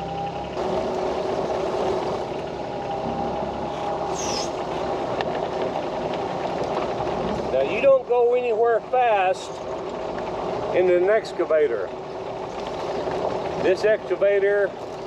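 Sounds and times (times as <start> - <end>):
excavator engine whining: 0.0 - 7.8
high squeal: 2.8 - 4.6.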